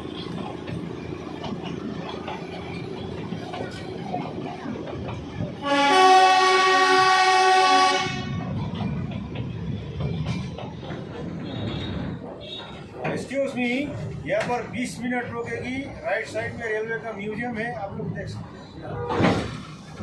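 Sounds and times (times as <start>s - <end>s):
train horn: 5.6s - 8.5s.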